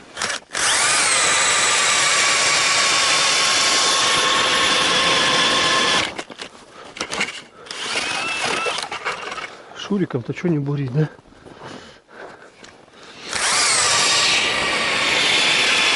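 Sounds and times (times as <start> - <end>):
cordless drill motor whining: 0.2 - 6.3, 7.6 - 9.5, 13.1 - 15.9.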